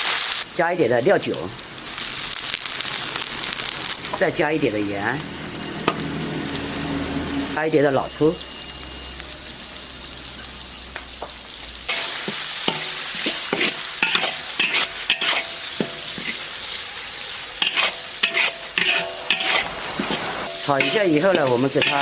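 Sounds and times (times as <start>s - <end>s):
food sizzling in a wok: 0.0s - 22.0s
spatula scraping a wok: 11.4s - 22.0s.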